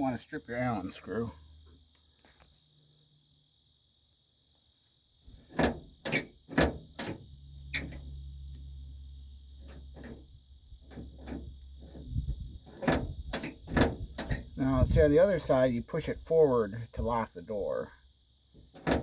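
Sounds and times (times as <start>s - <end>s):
crickets chirping: 0.0s - 19.0s
door latch clicking: 5.5s - 7.2s.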